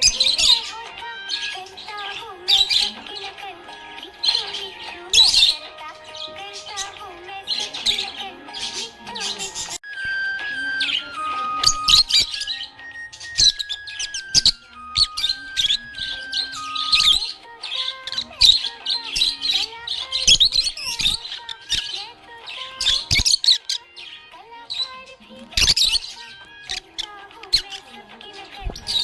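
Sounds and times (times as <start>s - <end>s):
budgerigars chirping and warbling: 0.0s - 29.0s.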